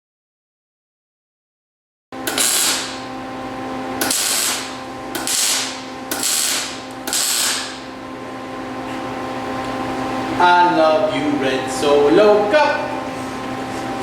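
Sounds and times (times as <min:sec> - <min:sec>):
steady hum: 0:02.2 - 0:14.0
rasping mechanical strokes: 0:04.0 - 0:07.8.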